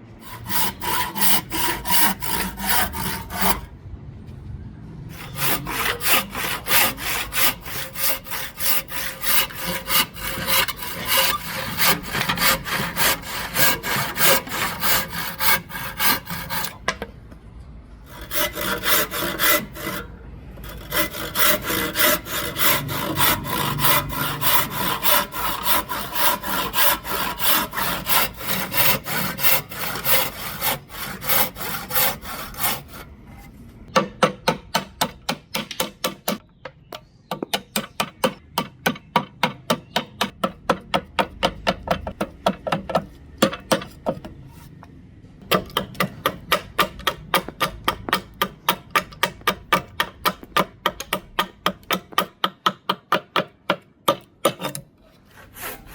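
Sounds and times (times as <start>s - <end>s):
hand tool rasping wood: 0.2s - 3.7s, 5.1s - 16.8s, 18.1s - 33.0s, 45.5s - 53.5s, 54.1s - 55.9s.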